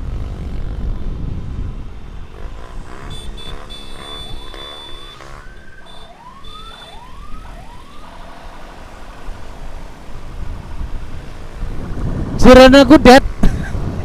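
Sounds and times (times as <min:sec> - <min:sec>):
road and wind noise: 0:00.0 - 0:14.0
siren whoops: 0:03.8 - 0:08.3.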